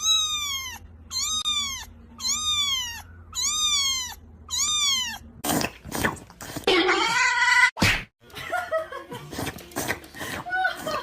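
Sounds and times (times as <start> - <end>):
cat meowing: 0.0 - 5.4.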